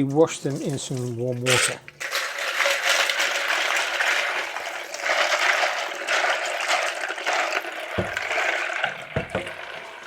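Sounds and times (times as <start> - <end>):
tap water running into jug: 0.1 - 10.0
knock: 8.0 - 8.3, 9.2 - 9.6.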